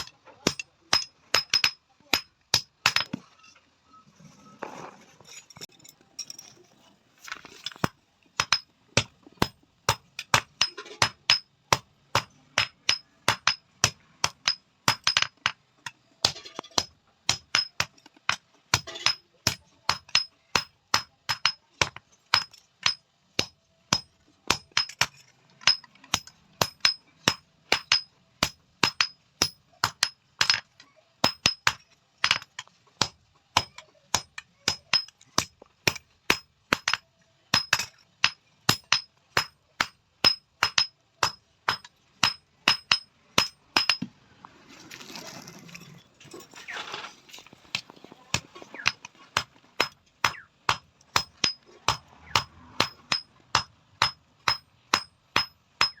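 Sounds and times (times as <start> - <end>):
hammer on metal plate: 33.0 - 44.1, 48.3 - 56.0.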